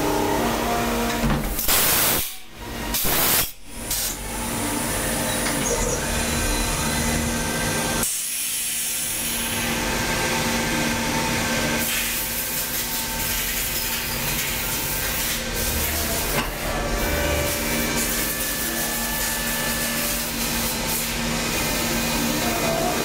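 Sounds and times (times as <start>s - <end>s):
machine hiss: 1.6s - 4.2s
machine hum: 3.6s - 8.0s, 13.1s - 23.0s.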